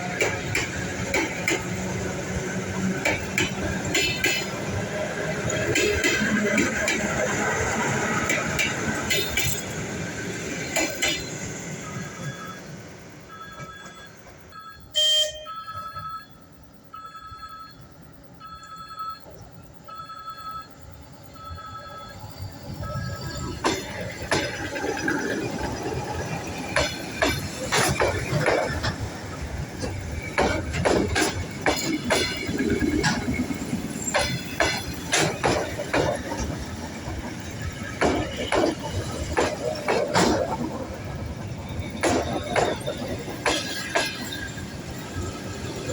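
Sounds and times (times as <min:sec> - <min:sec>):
wheels clacking over rail joints: 0:00.0 - 0:12.6, 0:22.5 - 0:45.9
regular beeping: 0:11.7 - 0:24.7
electric train running: 0:20.8 - 0:45.9.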